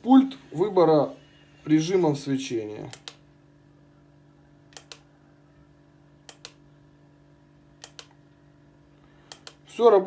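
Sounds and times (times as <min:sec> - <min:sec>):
faint low hum: 0:00.0 - 0:10.0
remote button clicking: 0:06.3 - 0:06.6, 0:07.8 - 0:08.2.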